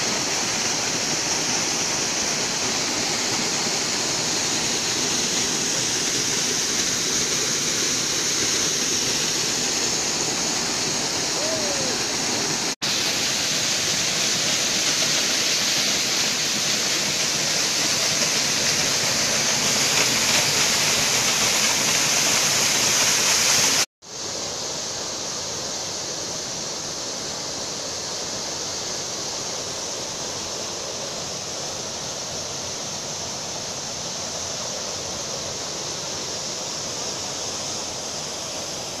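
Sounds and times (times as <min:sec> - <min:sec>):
waterfall rushing: 0:00.0 - 0:23.9.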